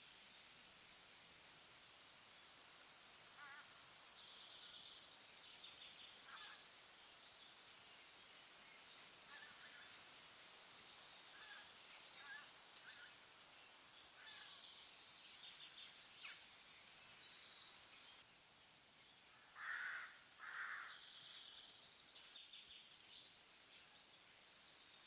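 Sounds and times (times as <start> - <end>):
soft hiss: 0.0 - 25.0
loud bird calls: 19.3 - 21.0.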